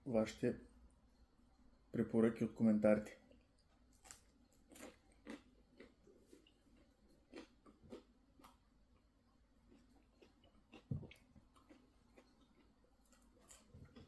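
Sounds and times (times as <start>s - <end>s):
chewing mouth clicks: 3.3s - 8.6s, 9.7s - 14.0s.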